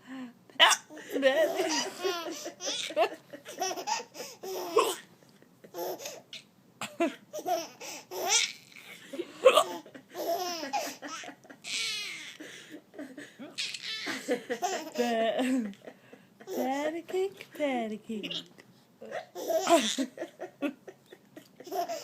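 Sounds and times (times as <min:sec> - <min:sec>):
woman hiccuping: 0:00.6 - 0:00.9
baby laughing: 0:00.7 - 0:15.8, 0:16.4 - 0:16.7, 0:19.1 - 0:22.0.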